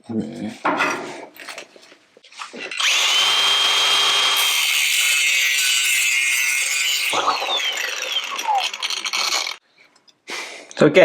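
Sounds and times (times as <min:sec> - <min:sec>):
power tool cutting sheet steel: 0:02.8 - 0:09.6.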